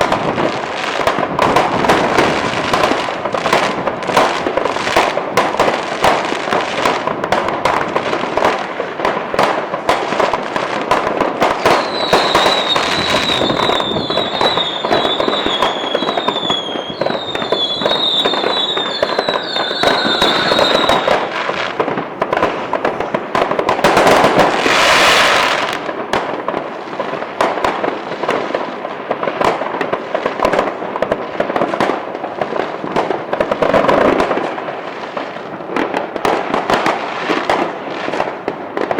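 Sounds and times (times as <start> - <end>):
fireworks crackling and banging: 0.0 - 38.9
falling firework whistles: 11.5 - 21.8, 24.0 - 25.9.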